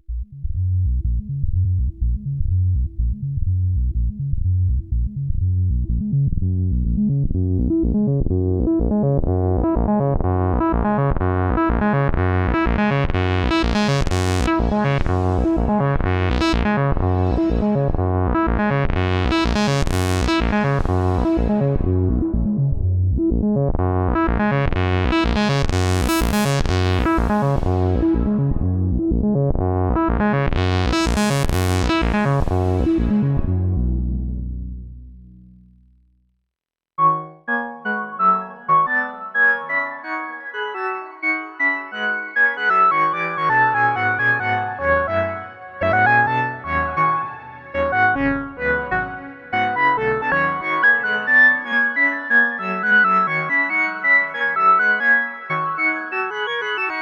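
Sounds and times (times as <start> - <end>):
synthesizer bass pattern: 0.0 - 35.8, 43.5 - 51.2.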